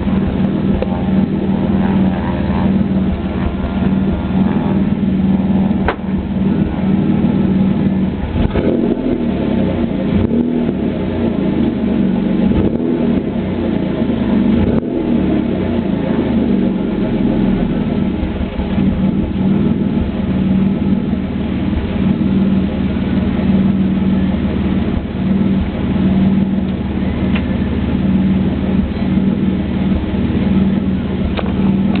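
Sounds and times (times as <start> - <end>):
car engine idling: 0.0 - 32.0
exhaust misfire: 0.0 - 32.0.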